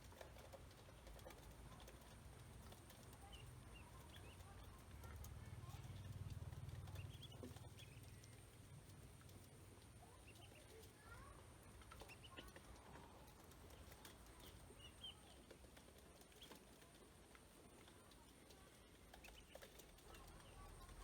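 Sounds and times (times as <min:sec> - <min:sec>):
ducklings peeping: 0:00.4 - 0:06.2, 0:06.8 - 0:08.5, 0:10.0 - 0:10.9, 0:11.8 - 0:15.5, 0:16.2 - 0:16.6, 0:19.1 - 0:20.6.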